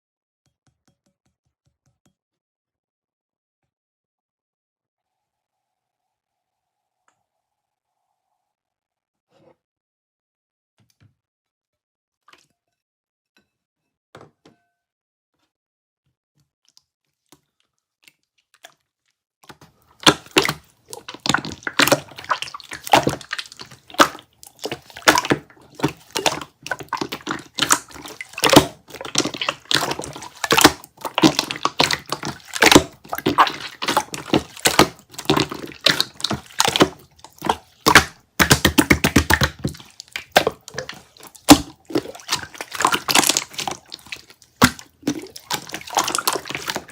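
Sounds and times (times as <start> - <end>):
slime clicking and crackling: 20.0 - 46.9.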